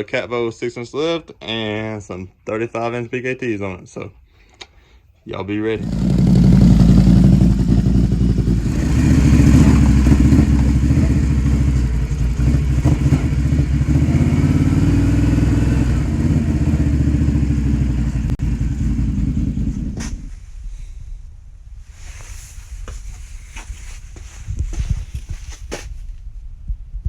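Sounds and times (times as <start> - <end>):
atv engine running: 5.8 - 20.1.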